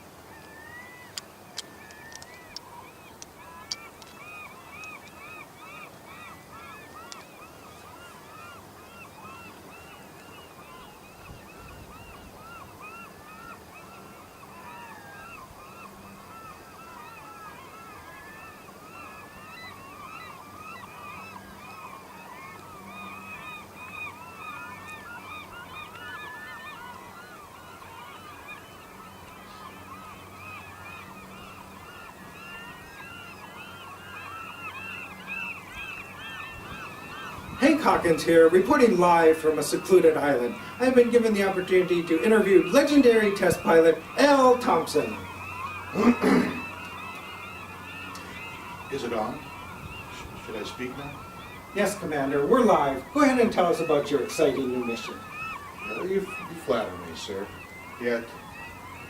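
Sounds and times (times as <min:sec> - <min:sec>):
chorus of animal calls: 0:00.0 - 0:59.0
sharp clicks: 0:01.1 - 0:04.2.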